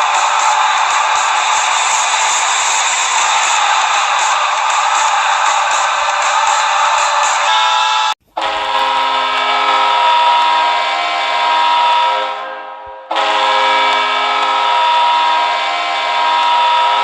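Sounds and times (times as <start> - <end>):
loud multi-note goal horn: 7.0 - 17.0.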